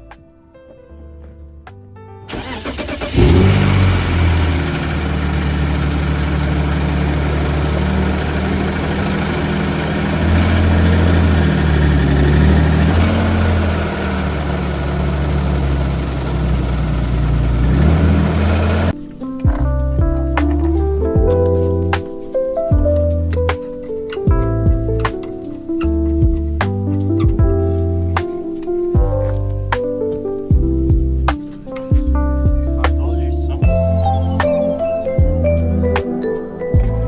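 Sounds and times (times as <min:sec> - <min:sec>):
car engine idling: 0:02.3 - 0:18.9
car engine starter cranking: 0:02.3 - 0:18.9.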